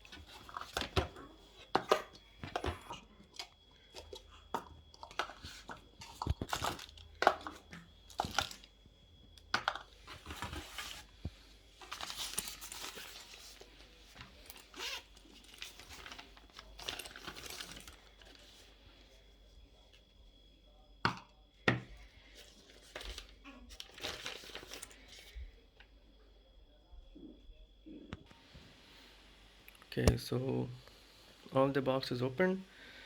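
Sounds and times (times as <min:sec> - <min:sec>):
wrapping crinkling and tearing: 0:11.8 - 0:13.8, 0:23.1 - 0:25.0.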